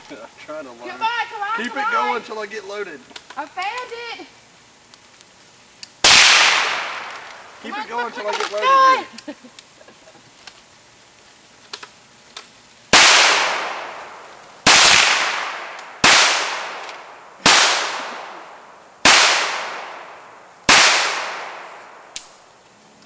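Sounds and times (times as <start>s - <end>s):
gunshots hitting steel target: 13.0s - 14.1s, 14.7s - 18.4s, 19.0s - 20.1s, 20.7s - 21.8s.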